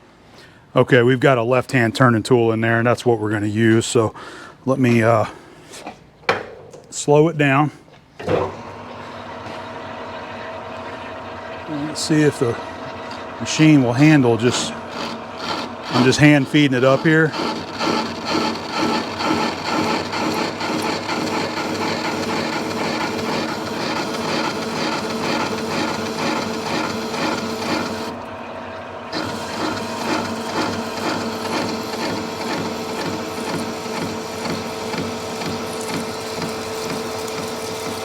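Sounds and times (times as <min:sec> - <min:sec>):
lathe motor hum: 0:08.6 - 0:38.0
lathe tool chattering on metal: 0:12.0 - 0:28.1, 0:29.1 - 0:38.0.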